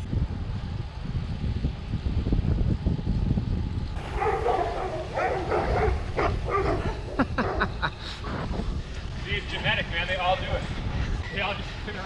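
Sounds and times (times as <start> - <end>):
wind rumbling on microphone: 0.0 - 12.0
dog barking and yelping: 4.0 - 7.8.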